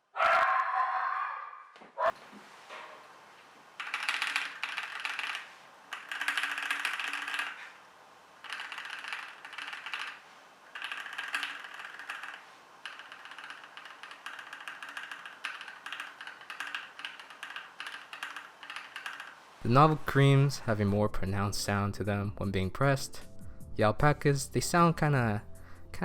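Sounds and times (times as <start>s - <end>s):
fast mechanical keyboard typing: 3.8s - 7.8s, 8.4s - 19.4s.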